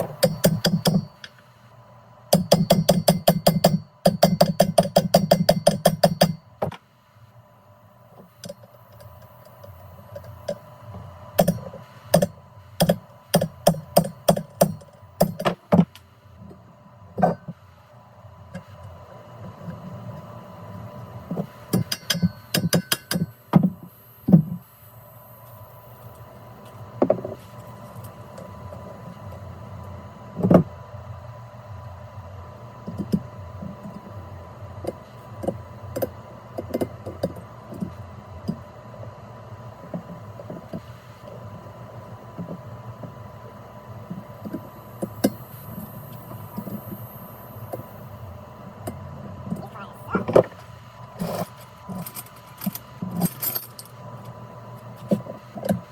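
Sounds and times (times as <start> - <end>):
steady hum with thin whine: 0.0 - 55.9.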